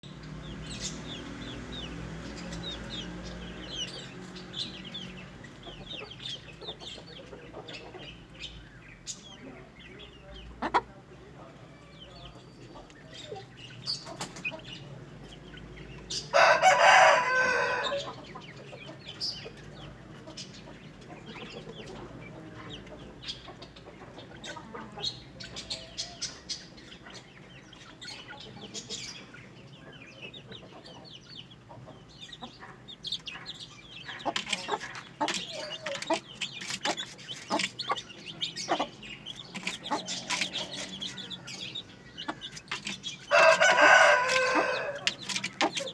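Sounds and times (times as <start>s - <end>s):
chickens clucking and calling: 0.0s - 45.9s
rooster crow: 16.3s - 18.1s, 43.3s - 45.3s.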